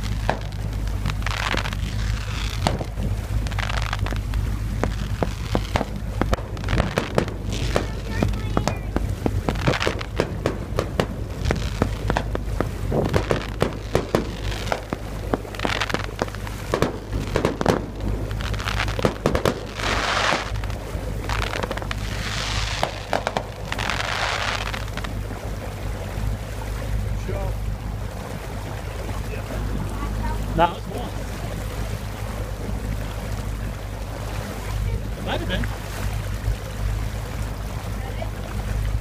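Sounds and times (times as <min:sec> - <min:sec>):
fireworks hissing bursts: 0:00.0 - 0:12.4, 0:13.0 - 0:25.1
fireworks popping and crackling: 0:00.0 - 0:25.2.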